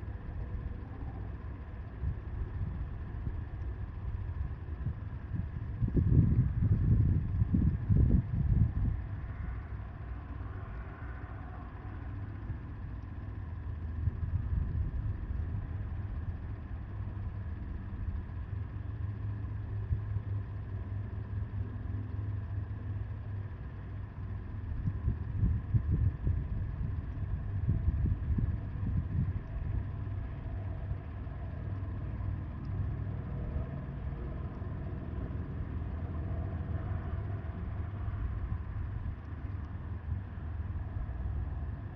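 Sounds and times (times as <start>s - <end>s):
wind blowing across microphone: 1.4s - 10.4s, 13.8s - 18.5s, 23.2s - 41.9s.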